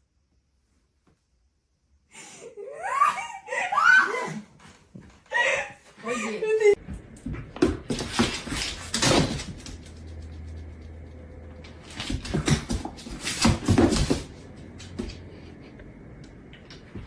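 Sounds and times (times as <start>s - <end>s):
low hum: 9.4s - 12.4s.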